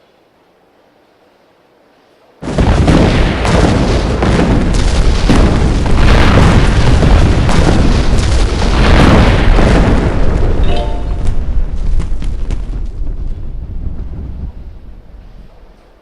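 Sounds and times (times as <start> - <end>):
loud rumbling roar with crackle: 2.4 - 15.6.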